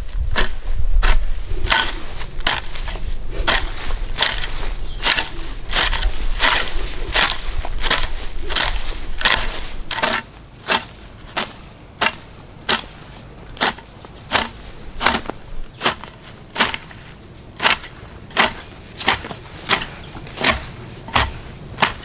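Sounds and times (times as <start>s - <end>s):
rustling noise: 0.0s - 11.7s
cricket trilling: 0.0s - 22.0s.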